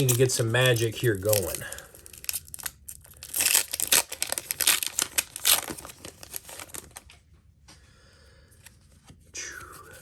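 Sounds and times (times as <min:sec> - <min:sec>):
foil wrapper crinkling: 0:00.0 - 0:07.2.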